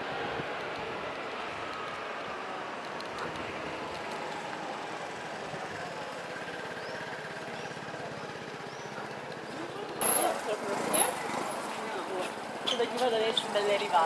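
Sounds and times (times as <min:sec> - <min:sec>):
street traffic noise: 0:00.0 - 0:14.0
vehicle engine idling: 0:03.6 - 0:14.0.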